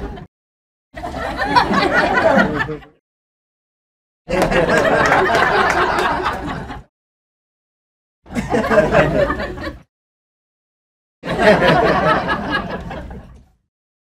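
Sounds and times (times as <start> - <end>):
crowd laughing: 0.0 - 0.3, 1.0 - 3.0, 4.3 - 6.9, 8.3 - 9.9, 11.2 - 13.6.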